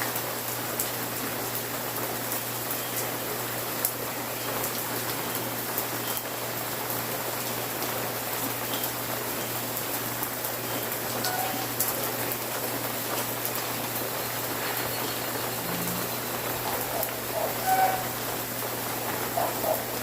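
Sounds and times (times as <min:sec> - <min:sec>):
steady rain hiss: 0:00.0 - 0:20.0.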